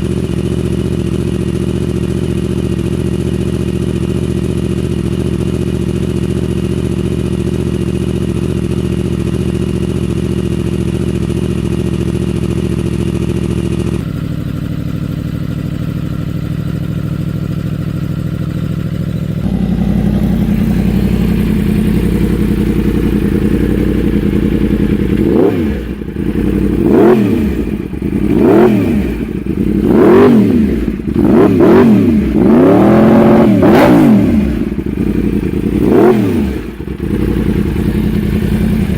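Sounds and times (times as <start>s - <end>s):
motorcycle engine idling: 0.0s - 38.9s
motorcycle throttle revving: 17.0s - 38.9s.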